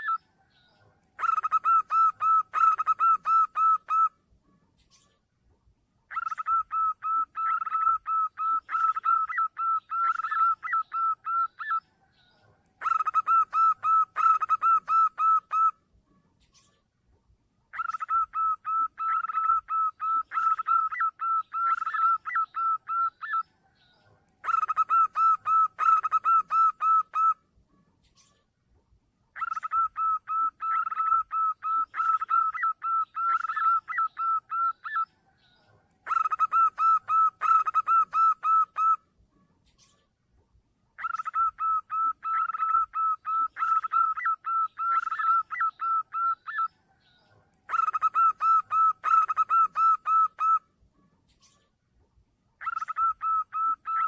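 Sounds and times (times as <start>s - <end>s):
dove cooing: 1.2s - 4.1s, 6.1s - 11.8s, 12.8s - 15.8s, 17.7s - 23.4s, 24.4s - 27.4s, 29.4s - 39.0s, 41.0s - 46.7s, 47.7s - 50.6s, 52.6s - 54.0s.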